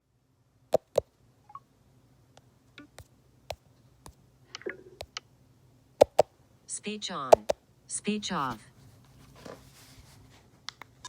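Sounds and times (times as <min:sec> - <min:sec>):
sharp clicks and taps: 0:00.8 - 0:01.1, 0:02.4 - 0:05.3, 0:06.0 - 0:06.3, 0:07.3 - 0:07.6.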